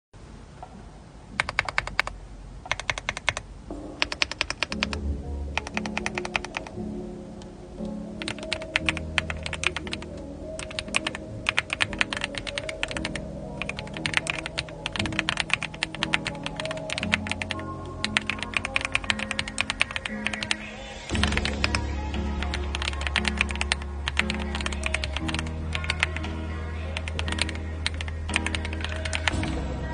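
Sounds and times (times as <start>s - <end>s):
typing on mechanical keyboard: 1.4s - 2.1s, 2.7s - 3.4s, 4.0s - 5.0s, 5.6s - 6.7s, 8.2s - 10.0s, 10.6s - 20.6s, 21.2s - 21.8s, 22.4s - 26.2s, 27.0s - 29.4s
background music: 2.7s - 29.9s.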